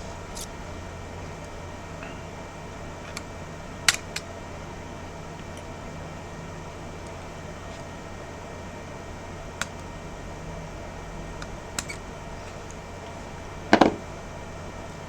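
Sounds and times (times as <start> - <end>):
steady electrical hum: 0.0 - 15.0
metal tools clicking on phone parts: 3.9 - 4.3, 11.4 - 12.6.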